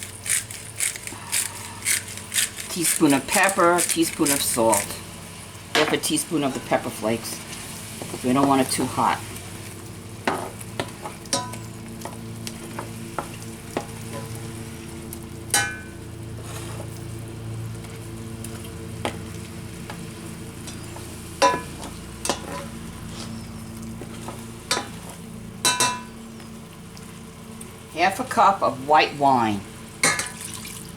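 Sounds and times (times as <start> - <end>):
shrimp sizzling in a frying pan: 0.0 - 28.0, 29.8 - 30.9
metal utensil clinking on pan: 21.4 - 22.7, 25.7 - 26.1, 30.0 - 30.4.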